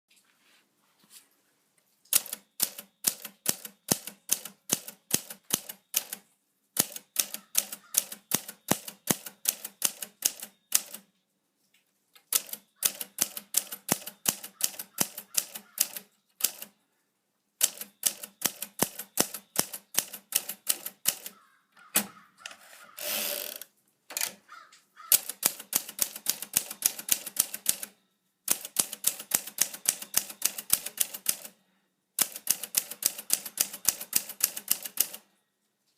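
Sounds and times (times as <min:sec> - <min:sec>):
typewriter key strikes: 0:02.1 - 0:06.2, 0:06.8 - 0:11.0, 0:12.3 - 0:16.7, 0:17.6 - 0:21.4, 0:25.1 - 0:27.9, 0:28.5 - 0:31.5
typewriter rasping: 0:02.1 - 0:06.2, 0:06.8 - 0:11.0, 0:12.3 - 0:16.7, 0:17.6 - 0:24.4, 0:25.1 - 0:27.9, 0:28.5 - 0:31.6, 0:32.2 - 0:35.2.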